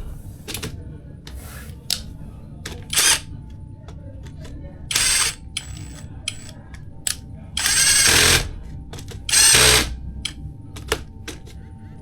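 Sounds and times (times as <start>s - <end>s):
sharp tool clicks: 2.7s - 3.3s, 4.2s - 11.5s
short bursts of tool noise: 2.8s - 3.3s, 4.9s - 6.5s, 7.6s - 8.5s, 9.3s - 10.0s.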